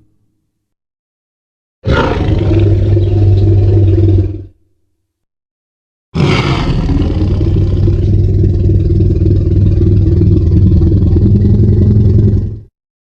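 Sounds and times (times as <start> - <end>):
low rattling dinosaur growl: 1.8 - 4.5, 6.2 - 12.7.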